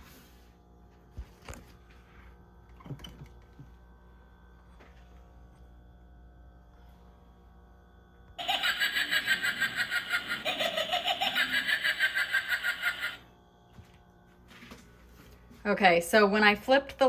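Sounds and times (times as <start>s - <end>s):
recorded laugh from small speaker: 8.4s - 13.2s.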